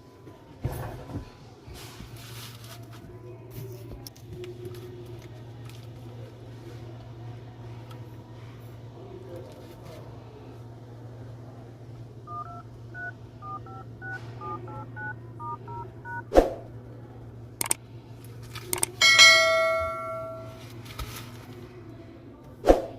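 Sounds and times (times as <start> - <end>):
touch-tone beeps: 12.3 - 16.3
sharp clicks: 17.6 - 17.8, 18.7 - 19.0
chime-like ringing tone: 19.0 - 20.6.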